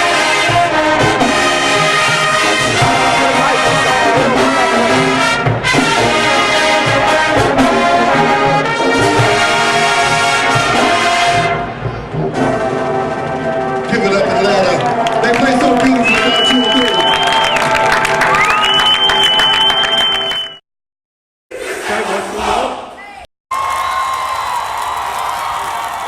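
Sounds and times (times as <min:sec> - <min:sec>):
marching band playing brass music: 0:00.0 - 0:20.5.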